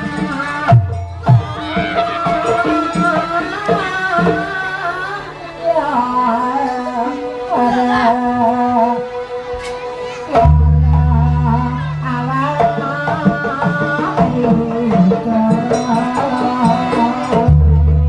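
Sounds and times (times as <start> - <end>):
hand drums: 0.0 - 4.8, 10.3 - 18.0
deep bass tone: 10.5 - 12.3.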